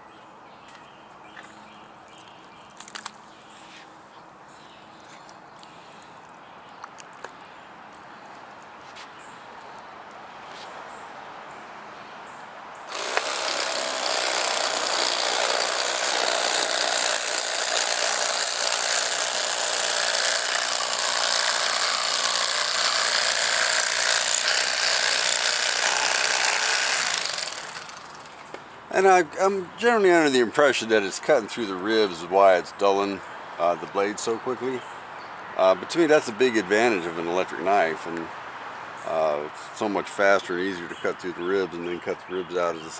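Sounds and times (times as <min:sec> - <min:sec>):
electric fillet knife buzzing: 0:12.9 - 0:28.5.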